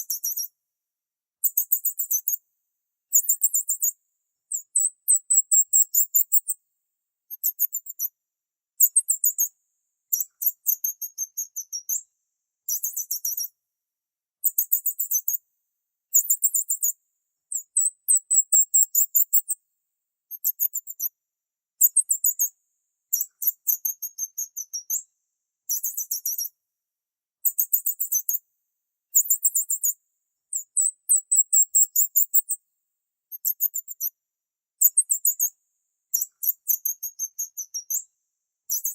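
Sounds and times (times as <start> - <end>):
high-pitched bird chirp trills: 0.0 - 0.5, 3.1 - 3.9, 4.5 - 6.6, 10.2 - 12.0, 12.7 - 13.5, 17.5 - 19.6, 29.2 - 32.6, 38.7 - 38.9.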